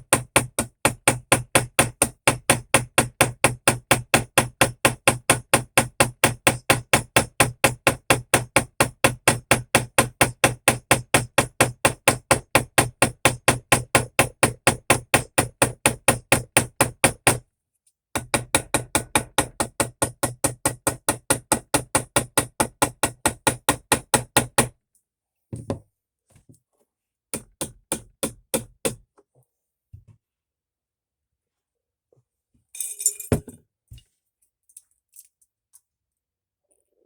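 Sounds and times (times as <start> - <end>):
hammer tapping on metal pin: 0.0 - 17.4, 18.2 - 24.7.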